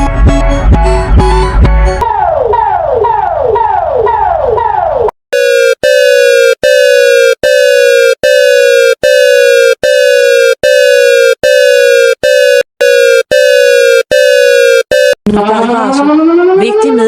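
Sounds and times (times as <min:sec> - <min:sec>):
buzzy electronic alert beeps: 0:05.4 - 0:15.3.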